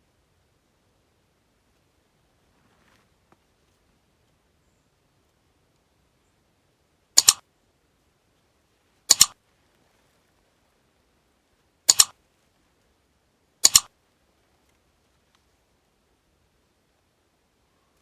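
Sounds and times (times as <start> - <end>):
sharp double clicks: 7.2 - 7.4, 9.1 - 9.4, 11.9 - 12.2, 13.6 - 13.9.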